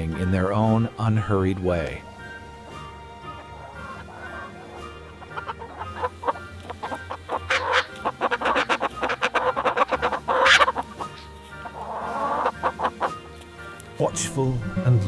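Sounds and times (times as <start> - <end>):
soft background music: 0.0 - 15.0
chickens clucking: 2.2 - 13.5.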